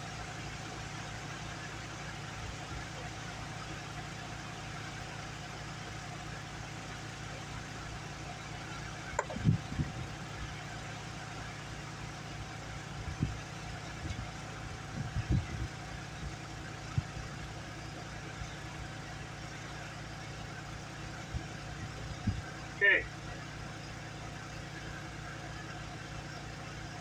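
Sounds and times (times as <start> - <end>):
motor humming: 9.1 - 10.4
handling knocks and clunks: 9.2 - 9.6.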